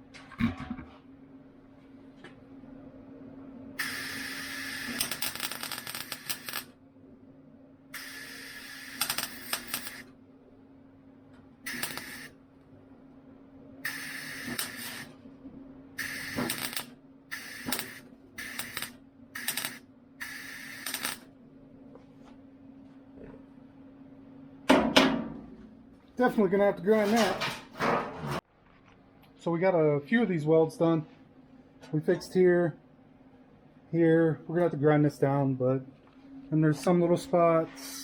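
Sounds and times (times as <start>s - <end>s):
steady hum: 0.0s - 27.0s
welding arc crackling: 3.8s - 6.8s, 8.0s - 10.1s, 11.6s - 12.4s, 13.8s - 15.2s, 16.0s - 21.3s.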